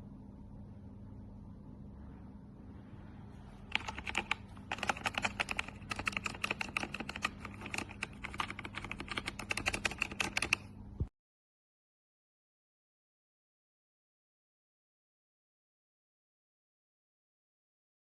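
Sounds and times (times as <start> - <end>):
faint steady hum: 0.0 - 11.1
mechanical keyboard typing: 3.7 - 10.7.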